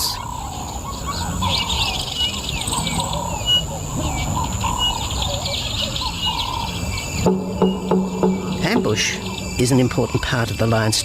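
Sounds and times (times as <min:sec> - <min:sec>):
birds chirping and trilling: 0:00.0 - 0:11.0
high-pitched drone: 0:07.2 - 0:10.2.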